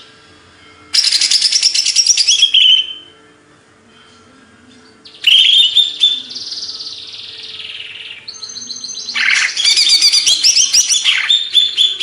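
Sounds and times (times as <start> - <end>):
bird singing: 0.9 - 3.1, 4.8 - 12.0.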